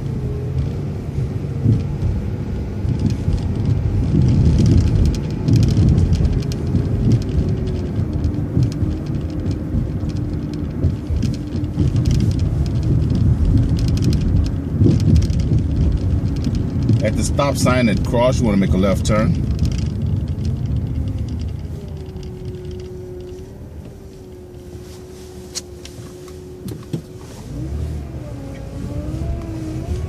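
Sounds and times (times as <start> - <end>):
bus engine and road noise: 0.0 - 30.0
light rattles: 1.4 - 30.0.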